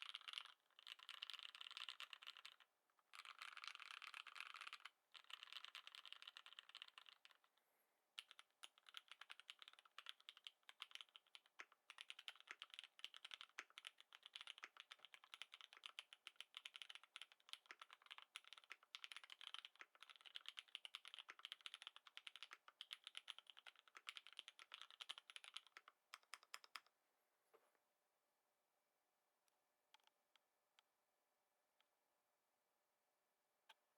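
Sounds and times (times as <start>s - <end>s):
mechanical keyboard typing: 0.0s - 7.5s, 8.2s - 26.9s.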